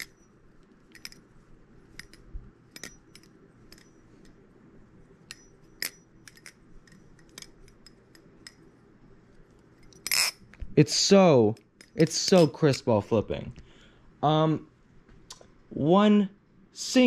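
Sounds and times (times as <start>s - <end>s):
metallic clicks of butterfly knife: 0.9s - 1.2s, 1.9s - 4.4s, 5.3s - 8.7s.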